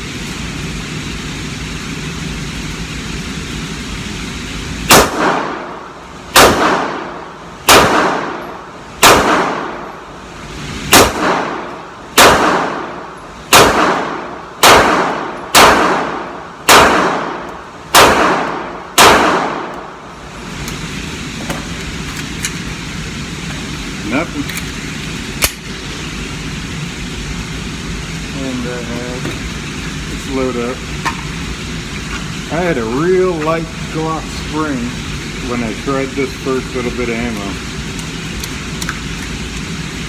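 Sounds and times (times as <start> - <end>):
pistol shots echoing indoors: 4.9 - 9.9, 10.9 - 20.0.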